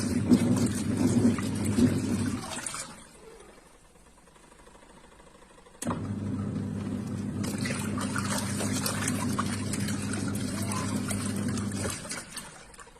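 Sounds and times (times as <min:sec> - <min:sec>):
water sloshing in tub: 0:00.0 - 0:03.8, 0:07.1 - 0:12.9
washing machine motor humming: 0:00.0 - 0:12.9.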